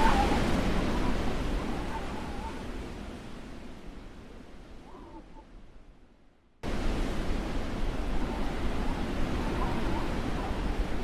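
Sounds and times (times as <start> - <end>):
snowstorm wind: 0.0 - 11.0.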